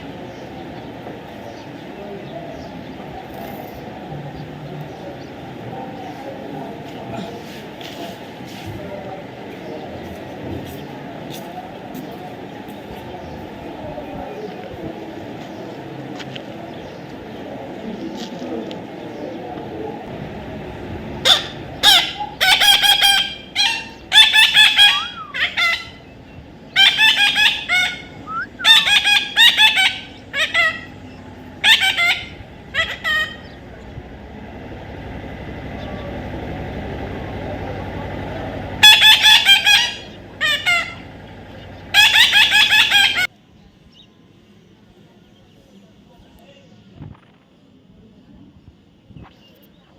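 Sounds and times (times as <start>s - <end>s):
parrot squawking: 21.2s - 33.7s, 38.8s - 43.3s.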